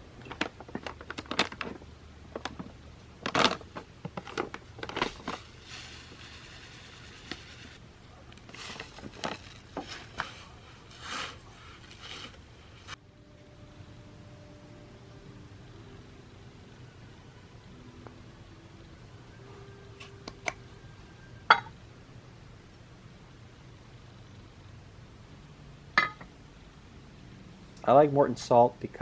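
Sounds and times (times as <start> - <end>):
crinkling and scraping: 0.1 - 13.0.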